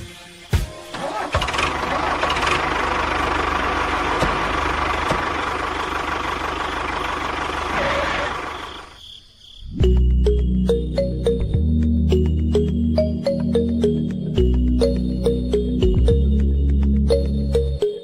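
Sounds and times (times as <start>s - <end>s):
engine starting with a thump: 0.9s - 2.8s, 4.1s - 5.5s
engine running with low pulse: 0.9s - 9.0s, 9.8s - 17.8s.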